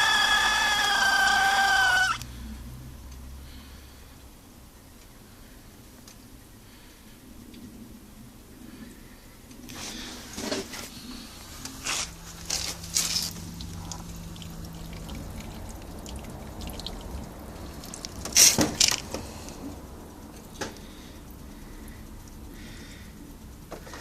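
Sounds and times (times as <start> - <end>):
radiator spluttering and gurgling: 0.0 - 2.2, 11.4 - 19.2.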